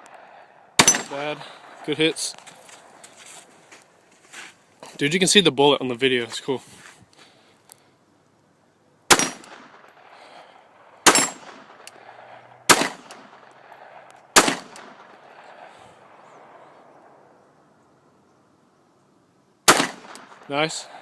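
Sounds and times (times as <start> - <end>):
pistol shots with echo: 0.0 - 2.0, 9.1 - 10.4, 11.0 - 16.6, 19.7 - 20.5.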